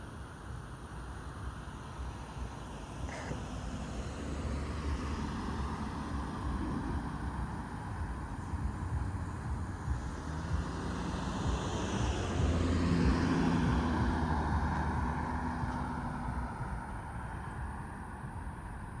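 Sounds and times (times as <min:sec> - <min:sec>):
car driving past: 0:03.3 - 0:17.7.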